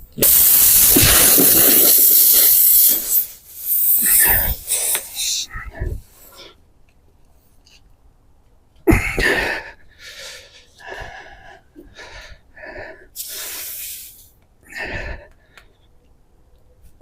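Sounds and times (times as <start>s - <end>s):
air hissing: 0.0s - 5.5s, 13.2s - 14.3s.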